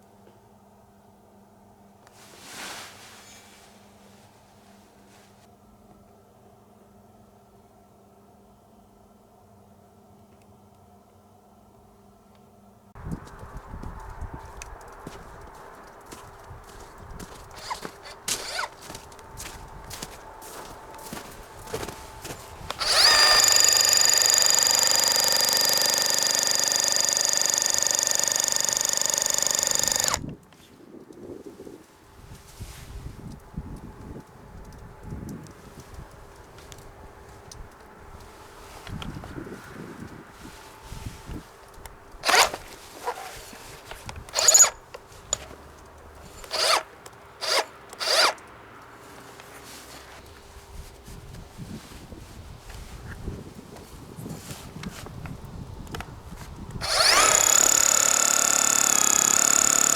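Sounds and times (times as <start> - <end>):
rotary hammer hammering: 22.8 - 30.3, 56.8 - 59.9.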